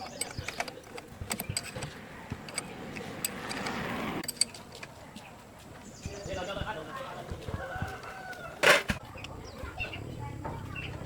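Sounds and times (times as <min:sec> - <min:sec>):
metallic clicks and knocks: 0:00.0 - 0:05.0.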